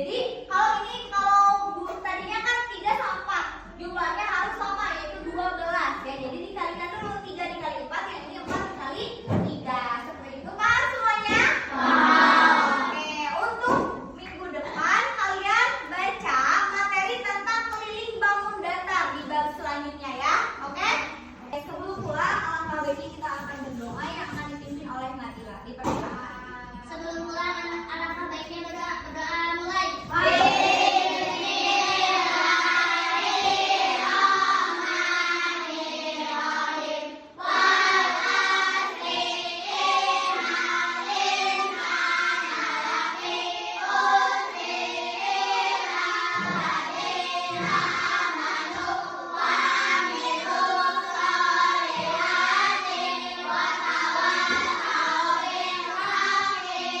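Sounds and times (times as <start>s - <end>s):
voices singing together: 11.3s - 13.4s, 29.8s - 57.0s.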